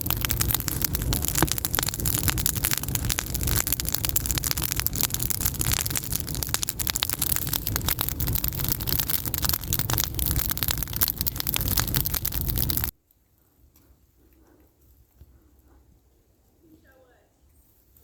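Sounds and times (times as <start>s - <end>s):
campfire crackling and popping: 0.0s - 12.9s
low fire rumble: 0.0s - 12.9s.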